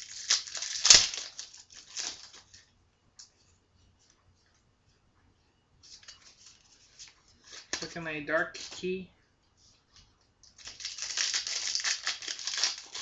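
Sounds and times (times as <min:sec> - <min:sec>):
foil wrappers crinkling: 0:00.0 - 0:02.7, 0:10.6 - 0:13.0.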